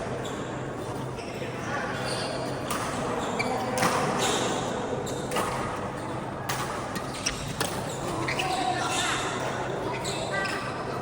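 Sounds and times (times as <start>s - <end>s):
shoe squeaks on court floor: 1.2s - 5.4s, 7.0s - 10.8s.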